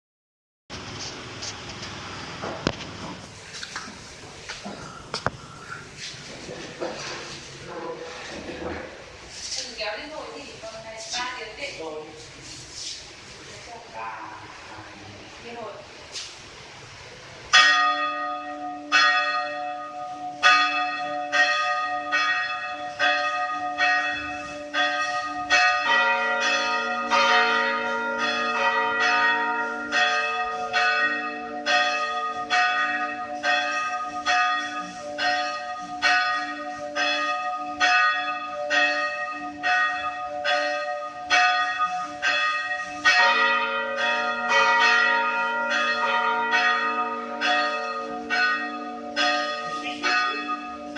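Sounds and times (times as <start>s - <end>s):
church bell ringing: 17.5s - 50.9s.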